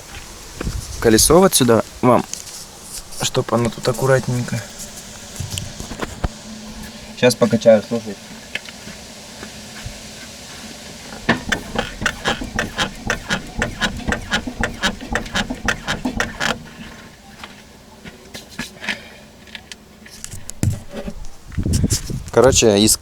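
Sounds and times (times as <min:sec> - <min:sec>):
suspension strut knocking: 0:11.0 - 0:17.2.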